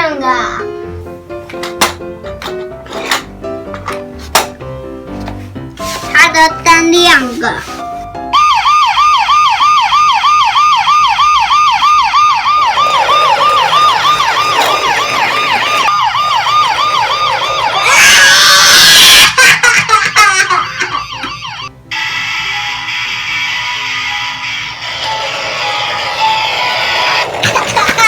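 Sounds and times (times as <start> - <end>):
electronic toy siren wailing: 8.3 - 19.2, 21.0 - 27.9.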